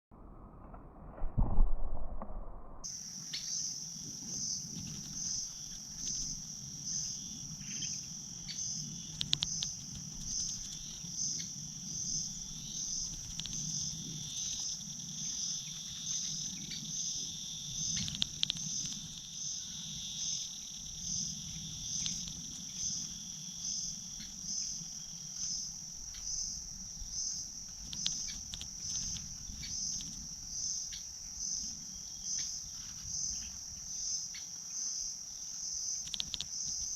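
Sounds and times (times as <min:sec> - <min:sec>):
crickets chirping: 0:02.8 - 0:36.9
faint clicks: 0:09.1 - 0:11.0, 0:13.0 - 0:13.7, 0:18.0 - 0:19.3, 0:21.9 - 0:22.6, 0:27.7 - 0:29.3, 0:36.0 - 0:36.9.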